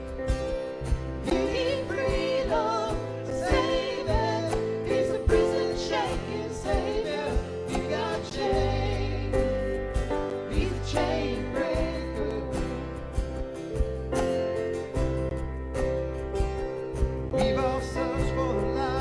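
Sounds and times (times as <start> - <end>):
bass guitar: 0.0 - 19.0
drums steady beat: 0.0 - 19.0
guitar: 0.0 - 19.0
person singing: 1.2 - 13.2, 17.3 - 19.0.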